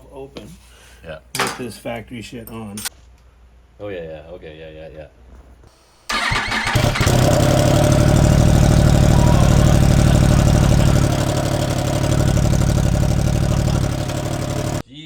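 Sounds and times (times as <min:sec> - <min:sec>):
motorcycle engine running: 0:06.1 - 0:14.8.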